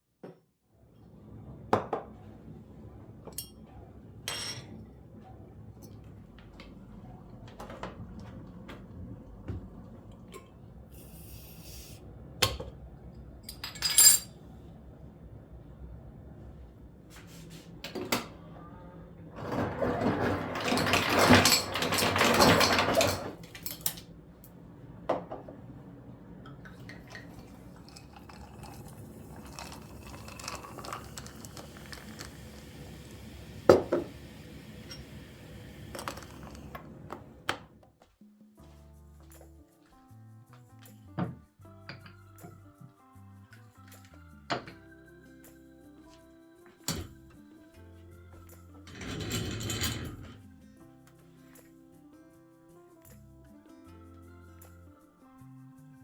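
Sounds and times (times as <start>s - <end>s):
dishes and utensils clinking: 3.3s - 3.7s, 4.3s - 4.8s, 13.4s - 14.4s, 19.4s - 24.0s, 26.7s - 32.4s, 34.8s - 35.3s, 35.9s - 37.0s, 48.9s - 50.4s.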